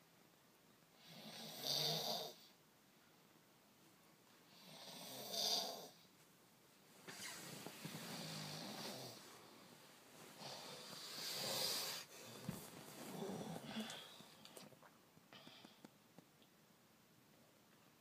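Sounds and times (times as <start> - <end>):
person snoring: 8.0 - 9.2, 10.4 - 12.4, 13.1 - 14.2.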